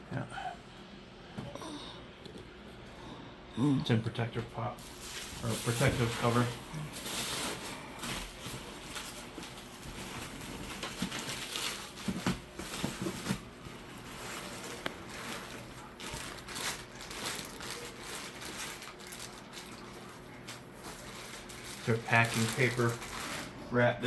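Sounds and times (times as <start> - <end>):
paper and plastic rustling: 4.8 - 23.6.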